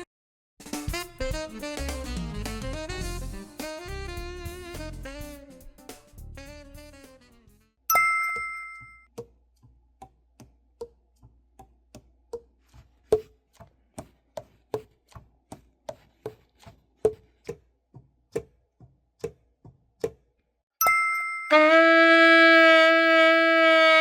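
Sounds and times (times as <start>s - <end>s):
bright ding: 7.9s - 9.1s, 20.8s - 21.5s.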